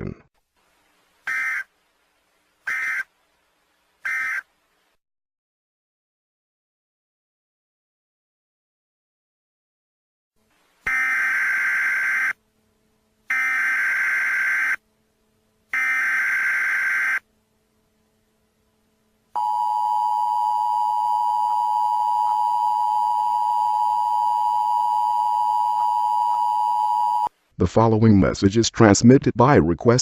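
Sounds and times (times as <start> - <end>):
two-tone attention signal: 19.4 - 27.3.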